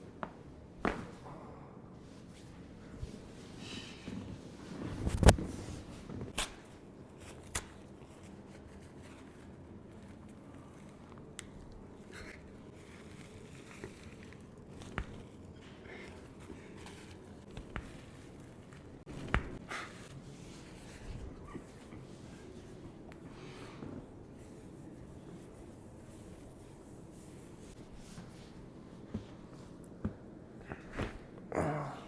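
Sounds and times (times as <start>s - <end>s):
chiropractic joint cracks and clicks: 5.0s - 5.4s.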